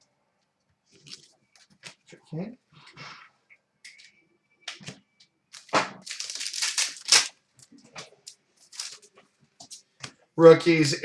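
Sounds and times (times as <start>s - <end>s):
cards rustling: 5.5s - 7.7s, 8.3s - 9.1s.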